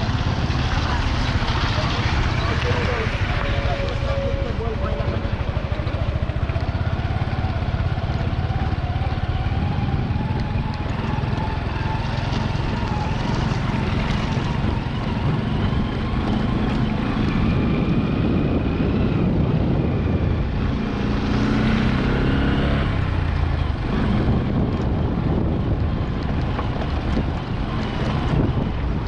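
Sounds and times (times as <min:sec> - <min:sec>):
vehicle passing: 0:00.0 - 0:18.4
road noise: 0:00.0 - 0:29.0
vehicle engines running: 0:00.0 - 0:29.0
wind buffeting microphone: 0:00.0 - 0:29.0.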